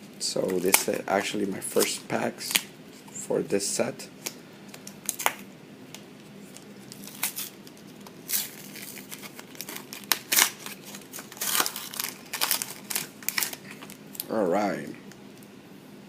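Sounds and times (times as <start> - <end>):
foil wrapper tearing and crinkling: 0.4 - 2.7, 4.2 - 5.4, 6.5 - 14.3.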